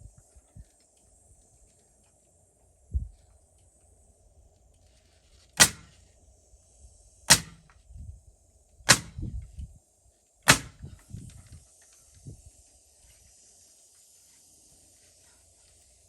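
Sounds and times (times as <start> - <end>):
sharp hammer strikes: 5.6 - 6.0, 7.3 - 7.7, 8.9 - 9.3, 10.5 - 10.9
low thudding: 8.9 - 9.3, 10.5 - 11.0.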